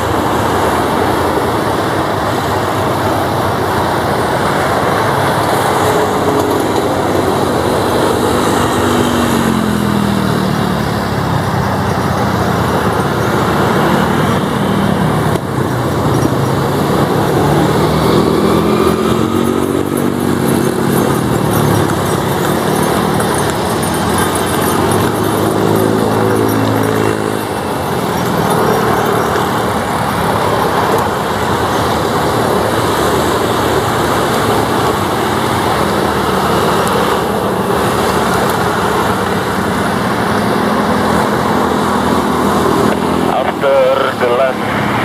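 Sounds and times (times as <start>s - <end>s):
turboprop engines droning: 0.0s - 45.0s.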